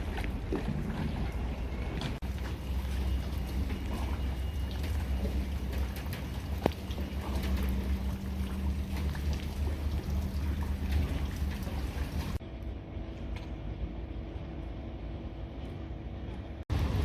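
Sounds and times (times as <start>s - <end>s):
splashing water: 0.0s - 12.4s
boat engine rumbling: 0.0s - 17.0s.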